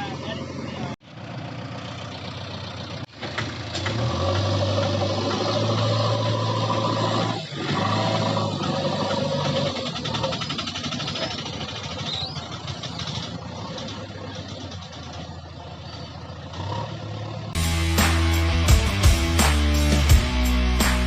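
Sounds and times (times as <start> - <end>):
heavy diesel engine running: 0.0 - 21.0
music: 17.6 - 21.0.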